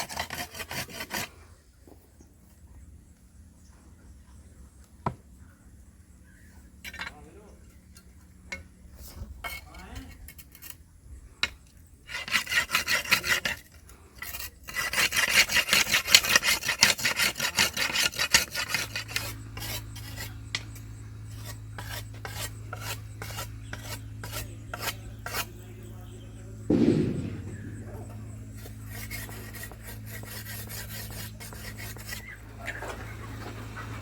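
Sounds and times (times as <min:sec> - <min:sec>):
rhythmic rasping scraping strokes: 0:12.1 - 0:25.8, 0:26.7 - 0:32.4
low hum: 0:25.7 - 0:31.5.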